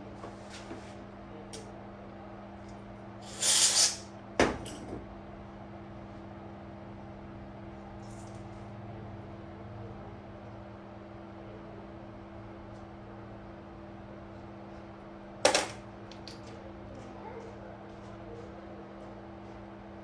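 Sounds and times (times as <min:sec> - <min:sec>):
steady electrical hum: 0:00.0 - 0:20.0
short hiss: 0:03.3 - 0:04.0.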